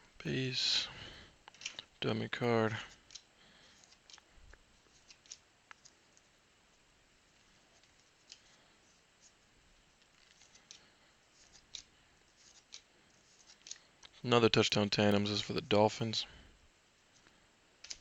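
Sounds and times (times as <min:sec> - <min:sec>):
trading cards clicking: 0:01.5 - 0:01.9, 0:17.8 - 0:18.0.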